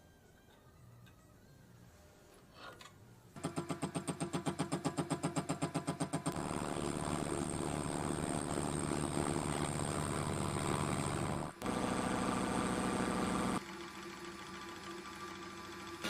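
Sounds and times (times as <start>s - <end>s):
milling machine cutting metal: 6.3s - 13.6s.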